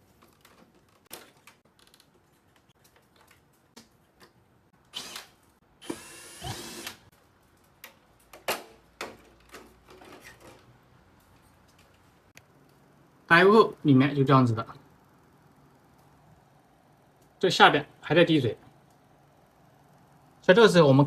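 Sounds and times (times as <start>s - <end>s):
electric screwdriver whirring: 4.9s - 7.0s.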